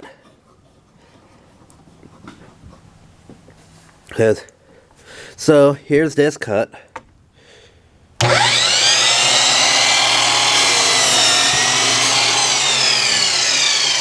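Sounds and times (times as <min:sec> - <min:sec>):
chop saw motor whine: 0:08.2 - 0:14.0
saw blade cutting wood: 0:08.2 - 0:14.0.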